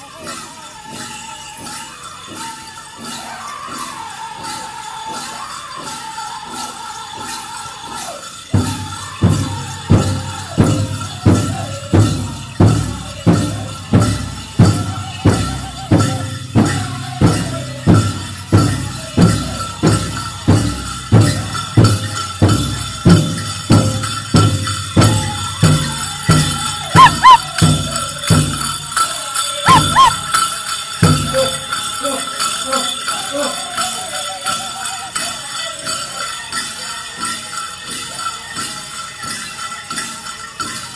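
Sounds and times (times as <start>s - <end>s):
people singing: 0.0s - 39.8s
drum beating steadily: 0.0s - 40.9s
jingling bells: 0.0s - 40.9s
high-pitched double notes: 27.0s - 27.4s, 29.7s - 30.3s.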